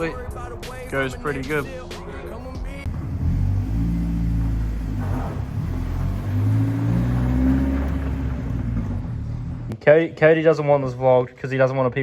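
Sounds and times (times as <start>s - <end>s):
car engine accelerating: 2.8s - 9.8s.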